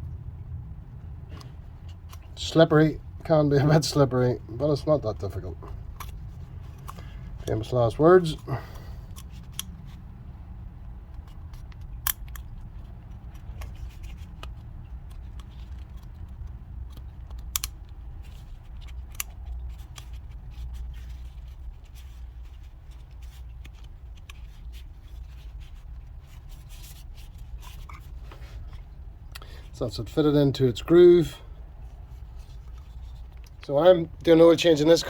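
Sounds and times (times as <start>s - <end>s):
low rumble: 0.0s - 3.6s
hands clicking and scraping rubber ring: 4.6s - 8.5s, 11.1s - 29.4s.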